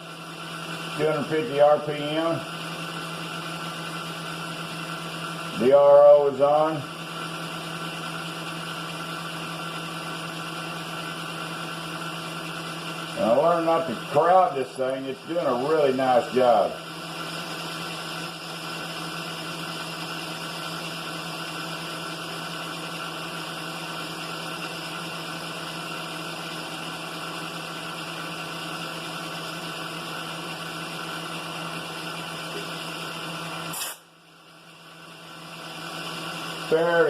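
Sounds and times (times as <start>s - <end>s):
air compressor running: 0.0s - 37.0s
milling machine running: 0.0s - 37.0s.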